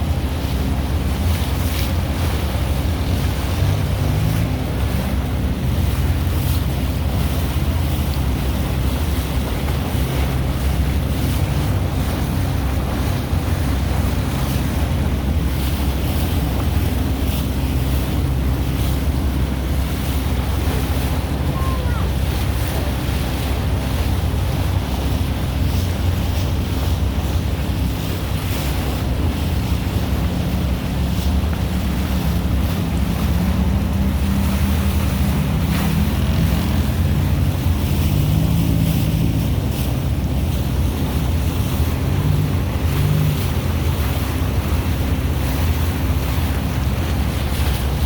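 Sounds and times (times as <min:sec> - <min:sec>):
vehicle engine rumble: 0:00.0 - 0:48.0
wind buffeting microphone: 0:00.0 - 0:48.0.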